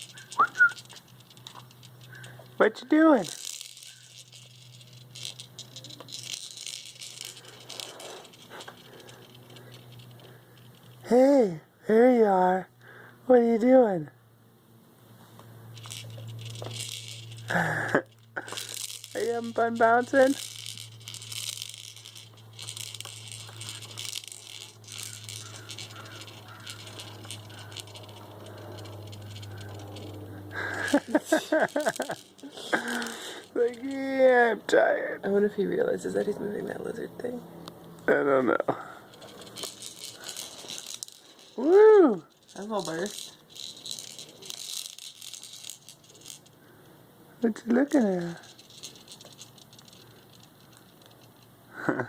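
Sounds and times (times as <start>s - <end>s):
plastic toys rattling: 0.0s - 11.2s, 15.7s - 34.5s, 38.2s - 52.0s
steady low hum: 0.0s - 11.8s, 14.1s - 35.2s.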